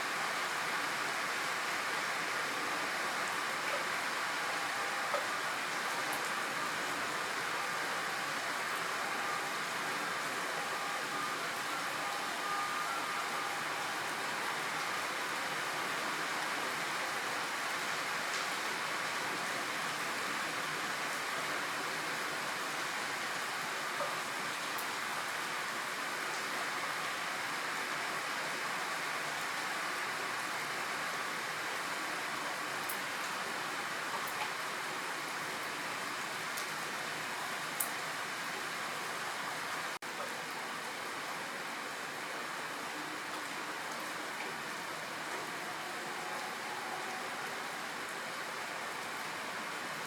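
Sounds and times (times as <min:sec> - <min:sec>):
steady rain falling: 0:00.0 - 0:50.0.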